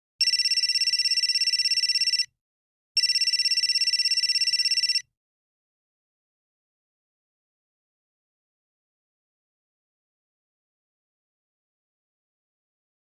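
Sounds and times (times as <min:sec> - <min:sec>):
cell phone electronic ringing: 0:00.2 - 0:02.3, 0:03.0 - 0:05.1.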